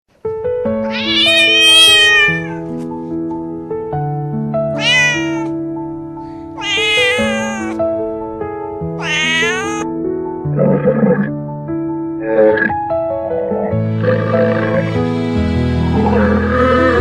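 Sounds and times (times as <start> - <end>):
background music of held notes: 0.3 - 17.0
cat meowing: 0.8 - 2.6, 4.8 - 5.5, 6.6 - 7.8, 9.0 - 9.9.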